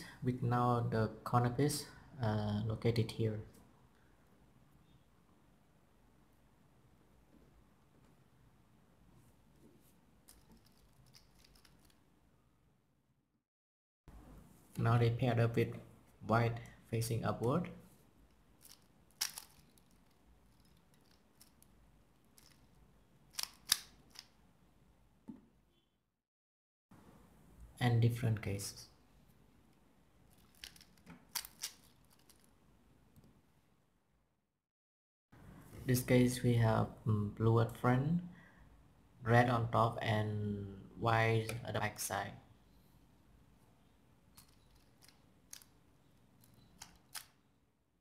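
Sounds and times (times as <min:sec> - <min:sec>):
plastic puzzle cube clacking: 0:10.3 - 0:12.0, 0:18.6 - 0:24.4, 0:30.3 - 0:32.5, 0:44.4 - 0:45.8, 0:46.4 - 0:47.4.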